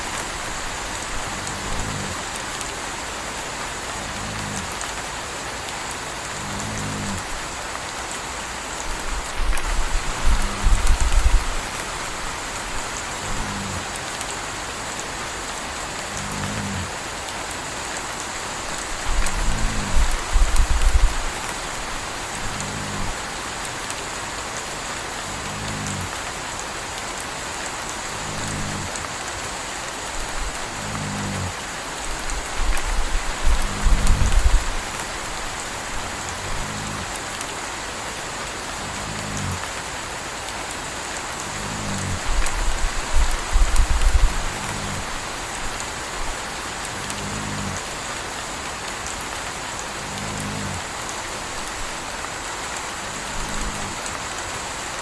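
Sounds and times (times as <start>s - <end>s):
puppy snoring: 0.0s - 2.7s, 3.9s - 5.0s, 6.3s - 7.5s, 8.9s - 14.0s, 16.0s - 16.9s, 18.8s - 23.4s, 25.3s - 26.2s, 28.1s - 29.1s, 30.2s - 37.3s, 38.8s - 39.7s, 41.4s - 47.9s, 49.9s - 52.1s, 53.0s - 54.1s
steady rain: 0.0s - 55.0s.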